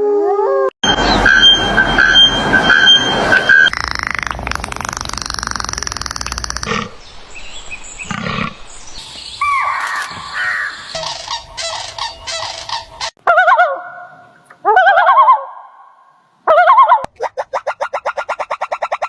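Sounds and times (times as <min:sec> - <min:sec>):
rhythmic rattling noise: 0:00.8 - 0:06.7
animal and bird calls: 0:03.7 - 0:15.6.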